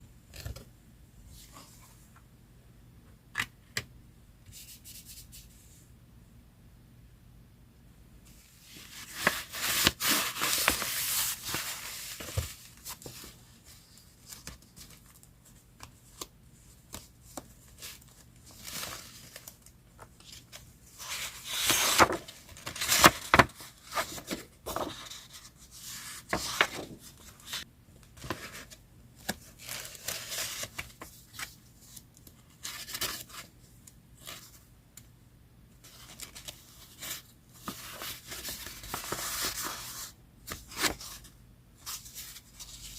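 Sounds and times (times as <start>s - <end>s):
paper tearing and crinkling: 8.9s - 12.4s, 21.0s - 23.5s.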